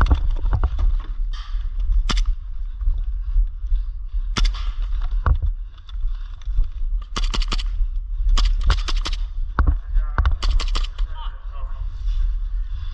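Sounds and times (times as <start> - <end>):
microphone handling noise: 0.0 - 2.5, 4.4 - 7.1
wind rumble on microphone: 0.0 - 12.9
airsoft gun shots: 4.4 - 4.8.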